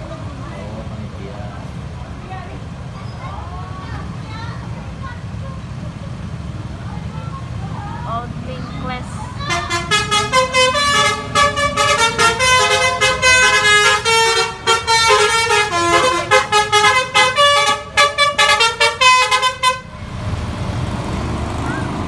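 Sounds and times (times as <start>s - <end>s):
low vehicle rumble: 0.0s - 22.0s
bus multi-tone horn tune: 8.8s - 20.2s.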